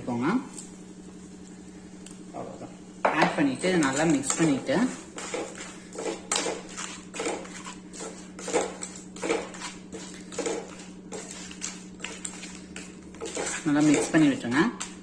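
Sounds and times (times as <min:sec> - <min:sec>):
steady low hum: 0:00.0 - 0:15.0
utensil scraping a pan: 0:03.5 - 0:15.0.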